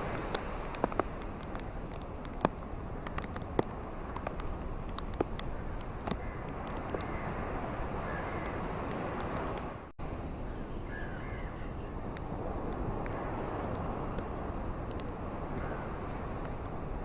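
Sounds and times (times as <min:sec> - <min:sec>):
rainfall hiss: 0:00.0 - 0:05.9
bird calls: 0:10.5 - 0:11.9.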